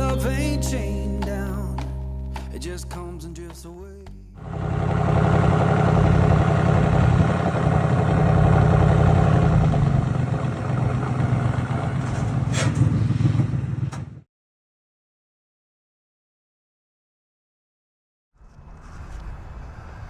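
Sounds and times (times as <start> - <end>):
loud car engine running: 4.4 - 14.2
sharp exhaust cracks: 4.4 - 14.2.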